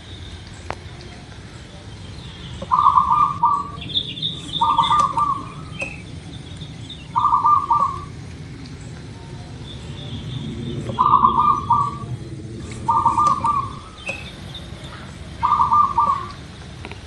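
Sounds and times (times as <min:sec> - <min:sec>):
low background hum: 0:00.0 - 0:17.0
dove cooing: 0:02.6 - 0:06.2, 0:07.0 - 0:08.2, 0:10.7 - 0:16.6.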